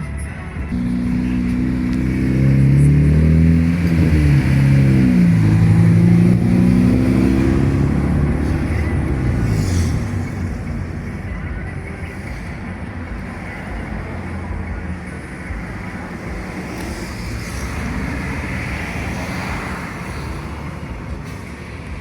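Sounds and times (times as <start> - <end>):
car engine drone: 0.0 - 22.0
tyre and road noise: 0.0 - 22.0.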